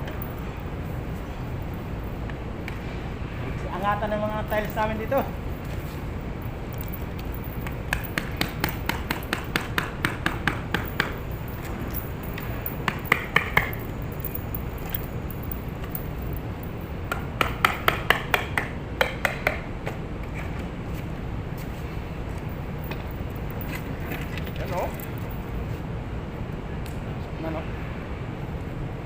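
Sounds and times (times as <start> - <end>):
hammer tapping on ceramic tiles: 7.6 - 11.2, 12.3 - 13.9.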